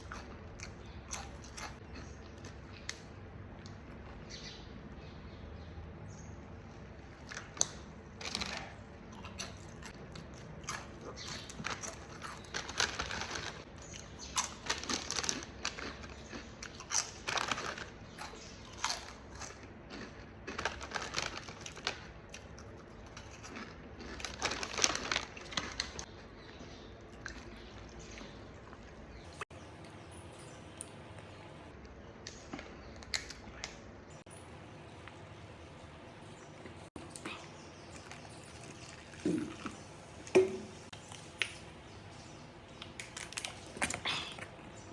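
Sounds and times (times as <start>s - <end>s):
potato chips being crunched: 7.3s - 8.8s, 10.7s - 26.1s.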